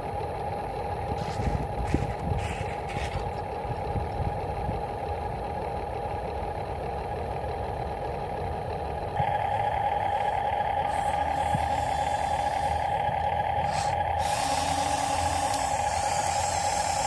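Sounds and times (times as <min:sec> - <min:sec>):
model vehicle motor whine: 0:09.2 - 0:17.0.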